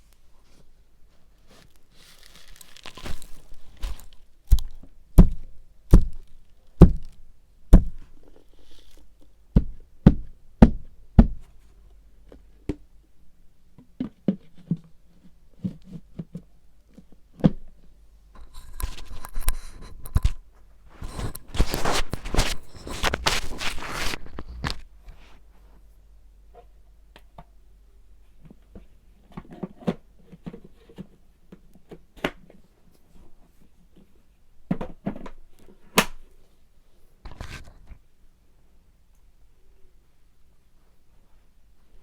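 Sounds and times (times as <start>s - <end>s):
rustling and handling noise: 0.0s - 9.8s, 13.9s - 26.8s.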